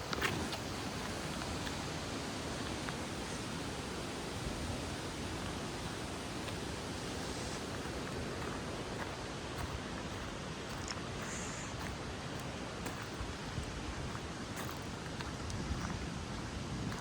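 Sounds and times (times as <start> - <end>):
steady rushing noise: 0.0 - 17.0.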